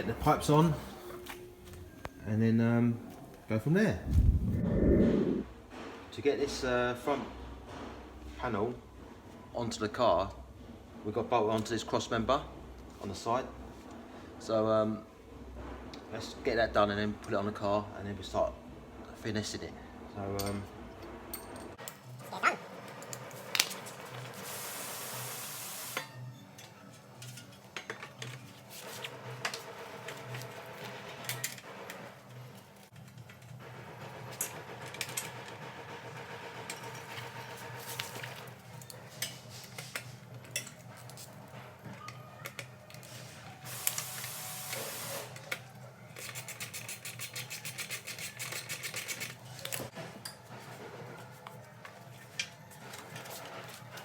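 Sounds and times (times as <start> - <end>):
low steady hum: 1.2 - 5.5
air hiss bursts: 43.7 - 45.4.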